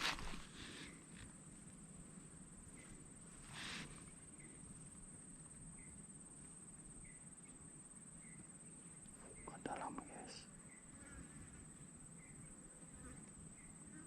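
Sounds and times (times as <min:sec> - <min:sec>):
brief rustle: 0:00.0 - 0:01.3.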